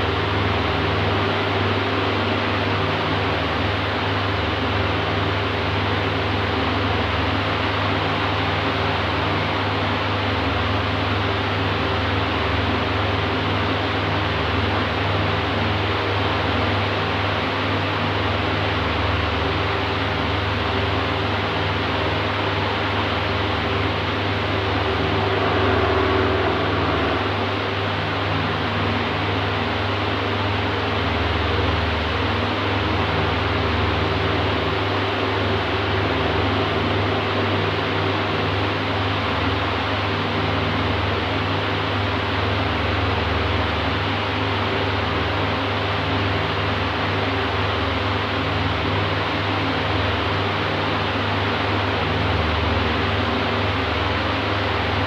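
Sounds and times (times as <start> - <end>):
fan air rush: 0.0 - 55.0
fan motor hum: 0.0 - 55.0.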